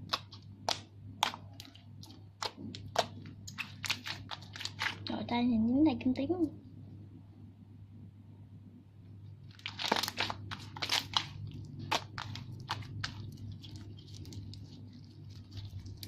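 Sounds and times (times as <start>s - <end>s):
slime squished by hand: 0.0s - 5.1s, 9.5s - 16.0s
steady low hum: 0.0s - 16.0s.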